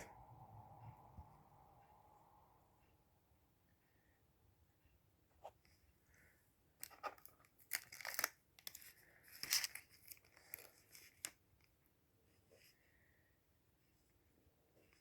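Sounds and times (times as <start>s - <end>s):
plastic packaging crinkling: 6.8s - 11.4s.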